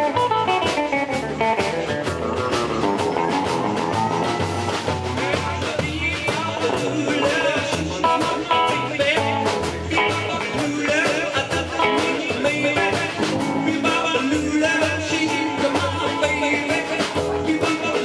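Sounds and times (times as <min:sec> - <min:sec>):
bass line: 0:00.0 - 0:18.0
rock band playing live: 0:00.0 - 0:18.0.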